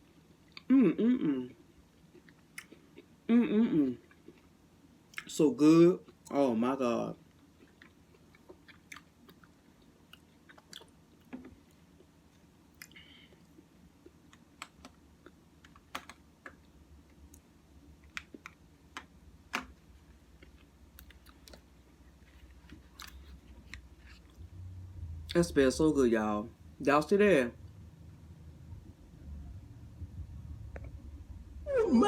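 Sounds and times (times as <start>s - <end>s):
chewing and mouth smacks: 1.9s - 3.2s, 5.1s - 5.4s, 7.3s - 18.6s, 20.3s - 21.7s.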